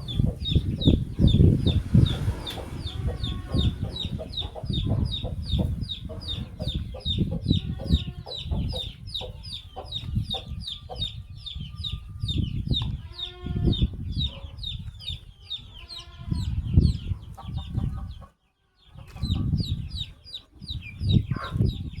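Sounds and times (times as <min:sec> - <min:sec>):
low rumbling and thumping: 0:00.0 - 0:10.6
chick peeping: 0:00.0 - 0:22.0.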